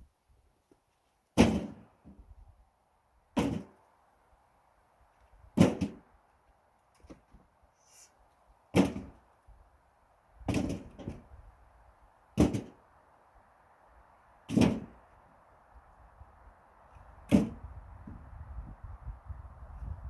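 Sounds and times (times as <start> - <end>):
firewood logs thudding: 1.4 - 2.3, 3.4 - 3.8, 5.5 - 6.1, 8.7 - 9.2, 10.4 - 11.3, 12.4 - 12.8, 14.5 - 15.0, 17.2 - 17.7.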